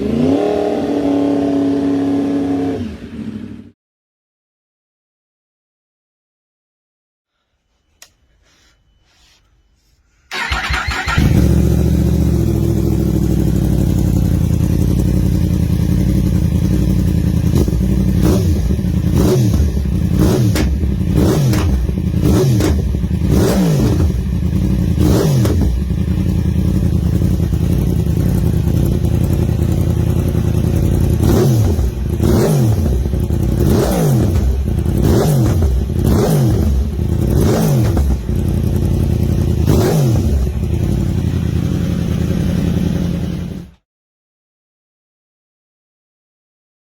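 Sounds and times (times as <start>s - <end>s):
motorcycle engine idling and revving: 0.0s - 3.8s, 10.3s - 43.8s.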